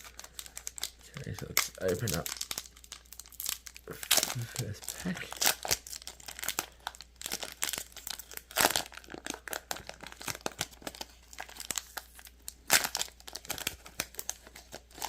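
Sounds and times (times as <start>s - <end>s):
foil pack crinkling: 0.0s - 15.0s.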